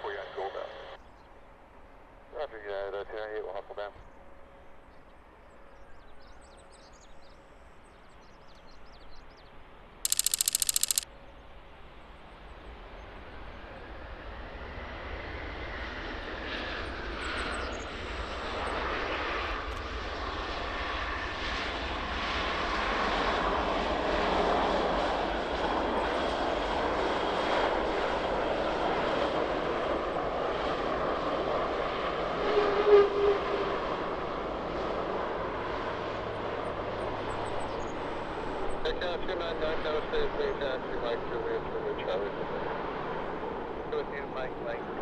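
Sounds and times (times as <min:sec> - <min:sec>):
jet airliner engine roar: 0:13.9 - 0:45.0.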